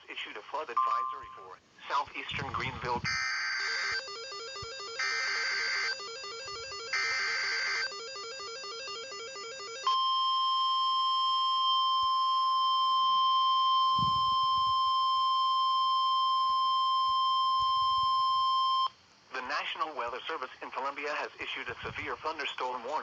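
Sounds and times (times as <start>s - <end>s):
stepping electronic tones: 2.4s - 18.9s
steady piercing alarm tone: 3.0s - 18.9s.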